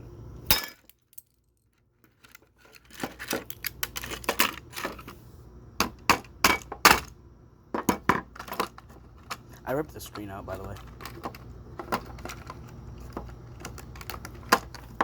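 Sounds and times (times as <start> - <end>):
plastic cracking and snapping: 2.1 - 4.9, 10.2 - 15.0.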